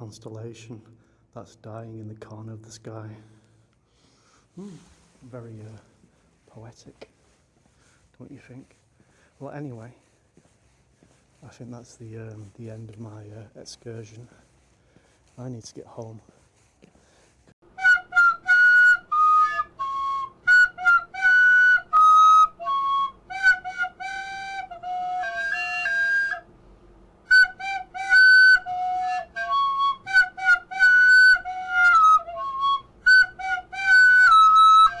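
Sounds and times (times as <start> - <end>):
flute melody: 17.7 - 26.5, 27.2 - 35.0.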